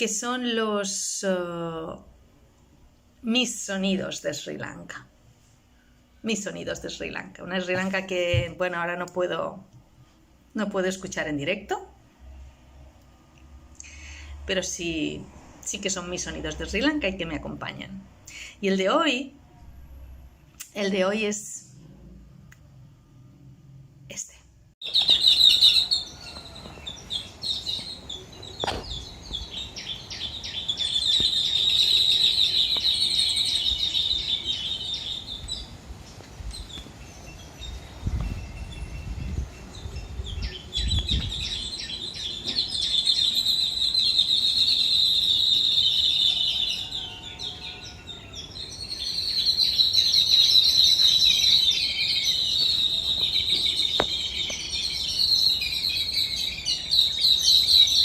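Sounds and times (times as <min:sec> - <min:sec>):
flock of small birds chirping: 0:24.8 - 0:58.0.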